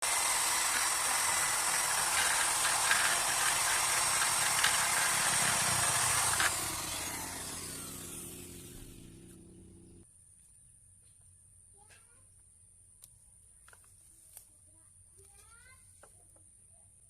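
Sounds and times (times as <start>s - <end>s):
electric drill whining: 0.0s - 9.4s.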